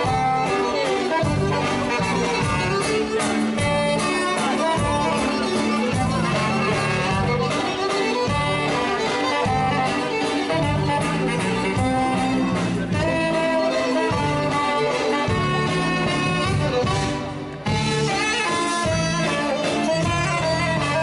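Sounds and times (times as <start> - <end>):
live band playing instrumental: 0.0 - 21.0.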